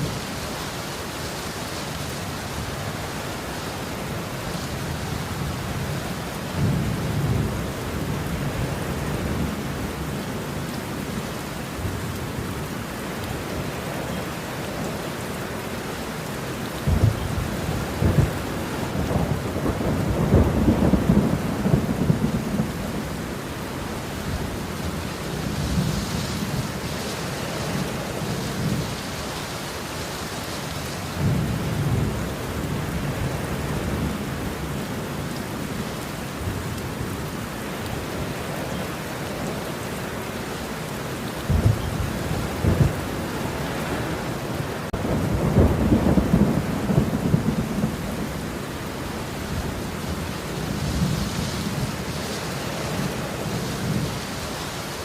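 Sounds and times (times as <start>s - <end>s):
heavy rain: 0.0s - 55.0s
thunder rumbling: 16.9s - 23.4s, 31.1s - 35.6s, 41.4s - 54.4s.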